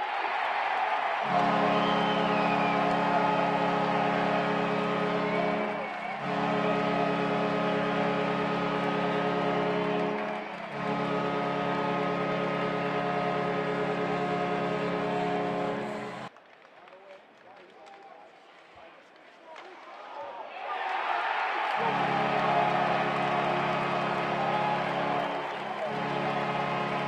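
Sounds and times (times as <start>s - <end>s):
crowd noise: 0.0s - 27.0s
goal horn blasts: 1.1s - 16.3s, 21.7s - 27.0s.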